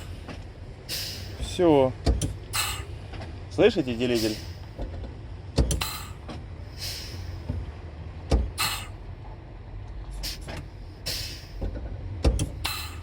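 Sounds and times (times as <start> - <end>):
air hiss: 0.9 - 1.4, 2.6 - 3.0, 4.2 - 4.7, 6.8 - 7.4, 8.6 - 9.0, 10.2 - 11.6, 12.5 - 13.0
gearbox clunk: 2.0 - 2.5, 4.7 - 6.5, 8.2 - 8.7, 11.6 - 13.0.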